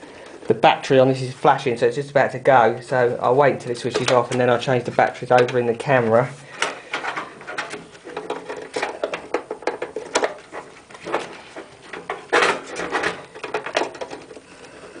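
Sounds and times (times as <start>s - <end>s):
hands handling computer parts: 3.4s - 15.0s.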